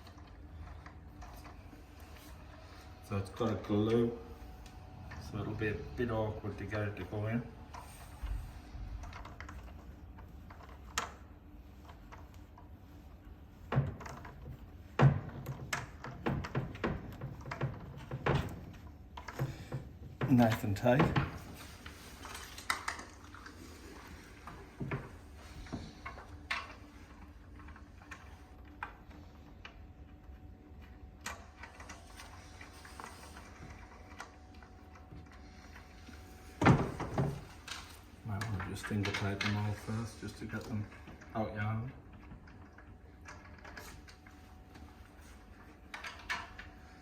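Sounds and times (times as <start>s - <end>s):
knocks and clicks of cot wheels: 5.0s - 47.0s.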